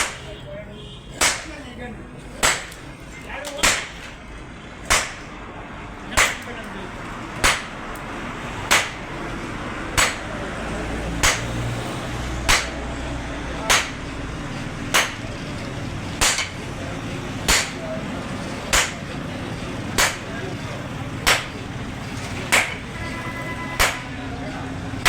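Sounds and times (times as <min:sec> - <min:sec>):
hammer striking metal: 0:00.0 - 0:00.3, 0:01.2 - 0:01.6, 0:02.2 - 0:02.8, 0:03.4 - 0:04.2, 0:04.8 - 0:05.4, 0:06.1 - 0:06.6, 0:07.4 - 0:08.0, 0:08.6 - 0:10.4, 0:11.1 - 0:11.7, 0:12.4 - 0:12.9, 0:13.6 - 0:16.8, 0:17.4 - 0:19.2, 0:19.8 - 0:20.6, 0:21.2 - 0:24.2.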